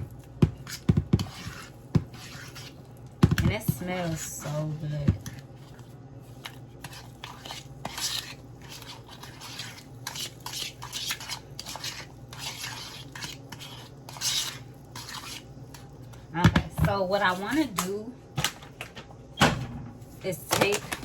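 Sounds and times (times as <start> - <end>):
utensil scraping in a bowl: 0.0 - 18.0.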